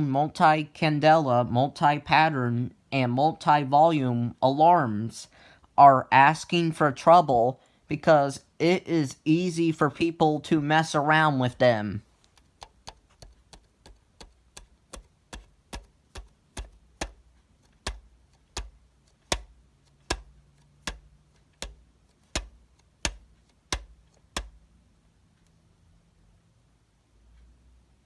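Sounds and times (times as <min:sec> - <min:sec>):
sharp clicks: 0:12.2 - 0:24.7.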